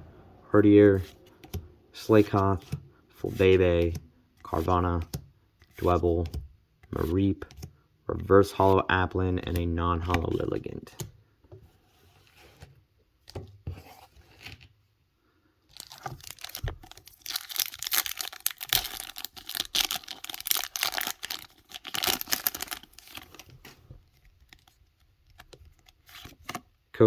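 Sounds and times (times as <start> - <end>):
foil wrapper crinkling and tearing: 15.7 - 23.6.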